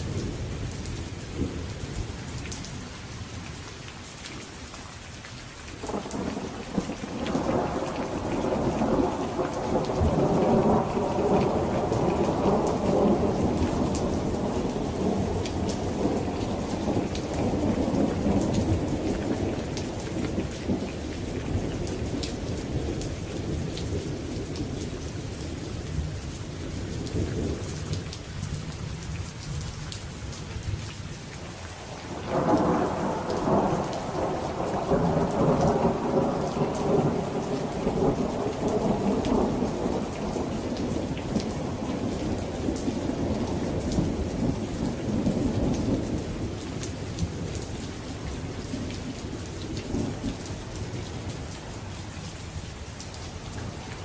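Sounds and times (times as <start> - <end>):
steady rain falling: 0.0 - 54.0
low thunder rumble: 5.8 - 24.8, 32.2 - 46.6.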